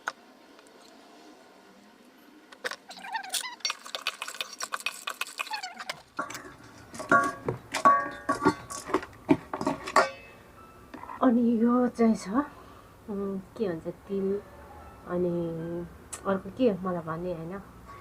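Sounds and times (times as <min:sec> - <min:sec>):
sharp clicks with squeaks: 0:05.4 - 0:06.0.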